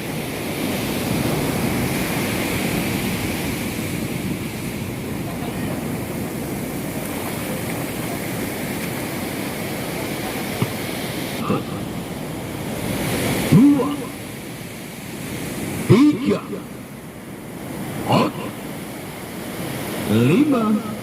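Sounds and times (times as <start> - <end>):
sea surf washing onto beach: 0.0 - 21.0.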